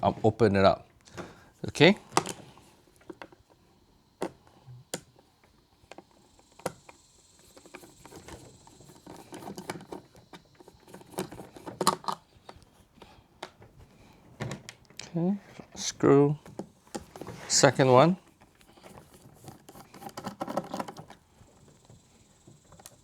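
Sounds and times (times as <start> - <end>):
tool clicks and scrapes on plastic: 5.9 - 12.7, 18.5 - 21.2.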